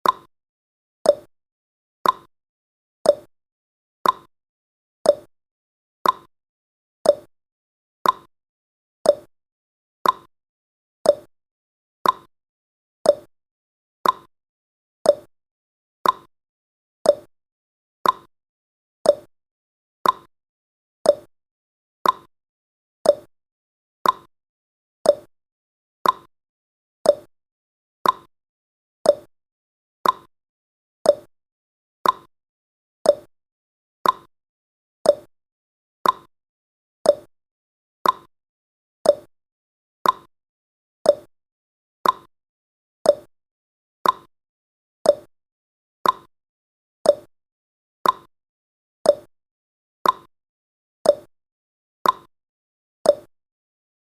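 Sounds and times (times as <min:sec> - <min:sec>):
timer ticking: 0:00.0 - 0:00.3, 0:01.1 - 0:01.3, 0:02.0 - 0:02.3, 0:03.1 - 0:03.3, 0:04.0 - 0:04.3, 0:05.1 - 0:05.3, 0:06.0 - 0:06.3, 0:07.1 - 0:07.3, 0:08.0 - 0:08.3, 0:09.1 - 0:09.3, 0:10.0 - 0:10.3, 0:11.1 - 0:11.3, 0:12.0 - 0:12.3, 0:13.1 - 0:13.3, 0:14.0 - 0:14.3, 0:15.1 - 0:15.3, 0:16.0 - 0:16.3, 0:17.1 - 0:17.3, 0:18.0 - 0:18.3, 0:19.0 - 0:19.3, 0:20.0 - 0:20.3, 0:21.0 - 0:21.3, 0:22.0 - 0:22.3, 0:23.0 - 0:23.3, 0:24.0 - 0:24.3, 0:25.0 - 0:25.3, 0:26.0 - 0:26.3, 0:27.0 - 0:27.3, 0:28.0 - 0:28.3, 0:29.0 - 0:29.3, 0:30.0 - 0:30.3, 0:31.1 - 0:31.3, 0:32.0 - 0:32.3, 0:33.1 - 0:33.3, 0:34.0 - 0:34.3, 0:35.1 - 0:35.3, 0:36.0 - 0:36.3, 0:37.0 - 0:37.3, 0:38.0 - 0:38.3, 0:39.0 - 0:39.3, 0:40.0 - 0:40.3, 0:41.1 - 0:41.3, 0:42.0 - 0:42.3, 0:43.1 - 0:43.3, 0:44.0 - 0:44.3, 0:45.1 - 0:45.3, 0:46.0 - 0:46.3, 0:47.1 - 0:47.3, 0:48.0 - 0:48.3, 0:49.1 - 0:49.3, 0:50.0 - 0:50.3, 0:51.1 - 0:51.3, 0:52.0 - 0:52.3, 0:53.1 - 0:53.3.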